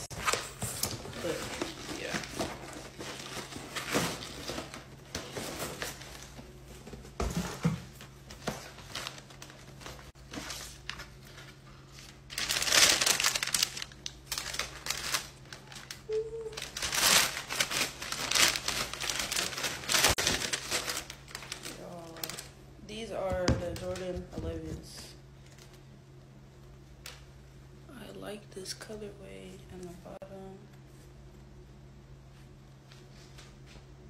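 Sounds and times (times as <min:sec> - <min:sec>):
paper crinkling and rustling: 0:00.0 - 0:22.5.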